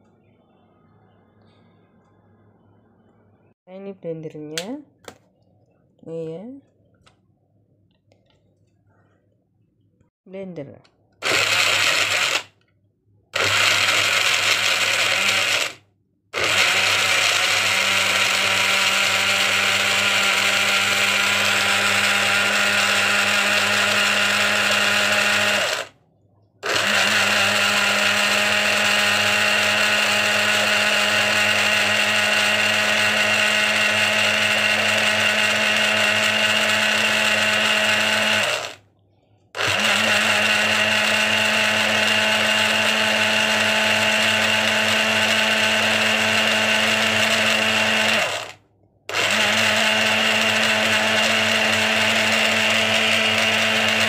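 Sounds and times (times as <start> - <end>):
electric blender running: 11.2 - 12.5, 13.4 - 15.8, 16.4 - 25.9, 26.6 - 38.8, 39.6 - 54.0.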